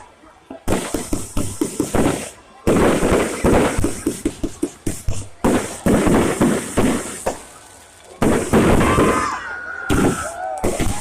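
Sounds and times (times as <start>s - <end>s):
fireworks bangs: 0.0s - 11.0s.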